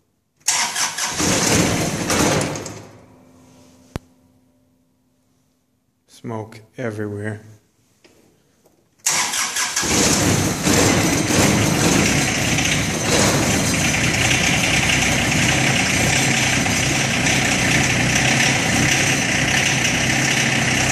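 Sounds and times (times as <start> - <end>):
diesel tractor engine idling: 9.9 - 20.9.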